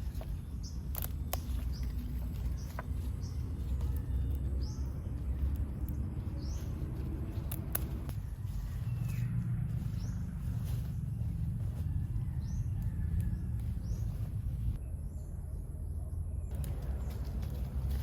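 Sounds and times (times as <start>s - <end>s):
small birds chirping: 0.0s - 18.0s
steady low rumble: 0.0s - 18.0s.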